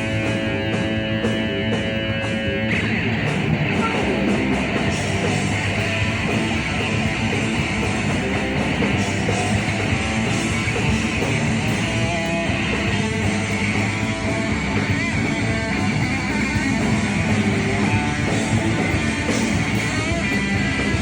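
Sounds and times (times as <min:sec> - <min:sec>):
rock band playing live: 0:00.0 - 0:21.0.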